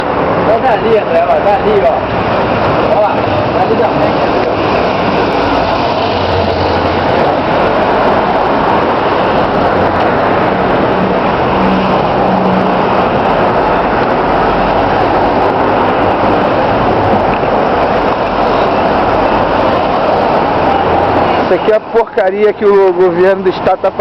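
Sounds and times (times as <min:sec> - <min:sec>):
street traffic noise: 0:00.0 - 0:24.0.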